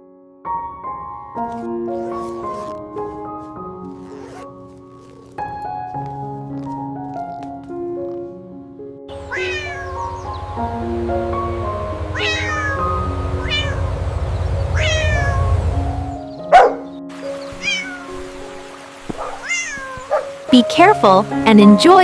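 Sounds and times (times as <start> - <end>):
gentle background music: 0.0 - 22.0
cat meowing: 9.2 - 10.3, 12.2 - 13.8, 14.8 - 15.5, 17.5 - 18.6, 19.2 - 20.3
low rumble: 12.8 - 16.2.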